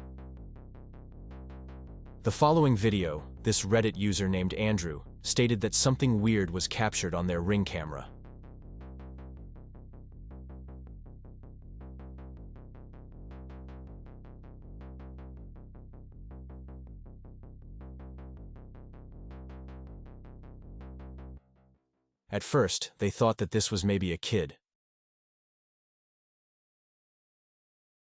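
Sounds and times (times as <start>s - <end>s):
low synth bass: 0.0s - 21.5s.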